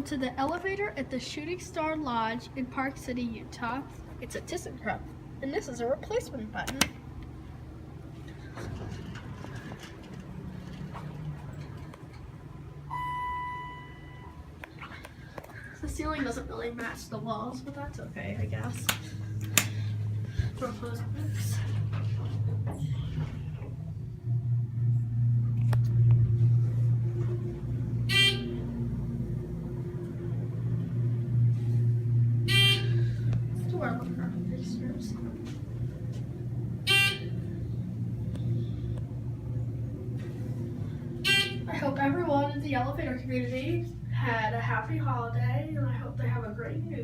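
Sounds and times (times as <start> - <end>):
elevator humming: 0.0 - 47.0
electronic chime: 12.9 - 14.3.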